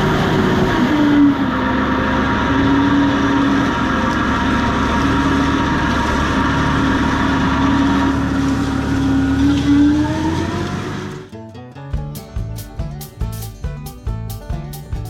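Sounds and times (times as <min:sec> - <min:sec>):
tractor engine running: 0:00.0 - 0:11.4, 0:12.0 - 0:15.0
music: 0:11.1 - 0:15.0.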